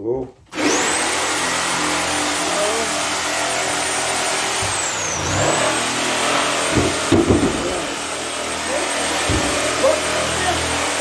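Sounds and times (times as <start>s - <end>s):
electric power saw whining: 0.5s - 11.0s
knocks: 4.5s - 5.3s, 6.2s - 8.1s, 9.1s - 9.8s.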